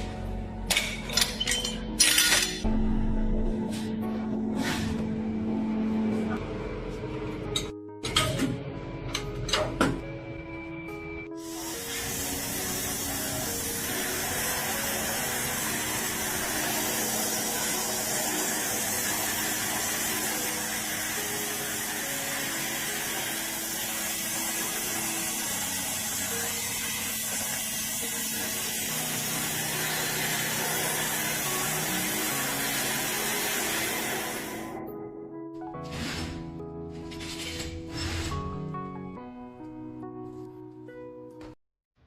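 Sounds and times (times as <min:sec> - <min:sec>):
background music: 0:00.0 - 0:41.6
hissing spray: 0:11.4 - 0:34.7.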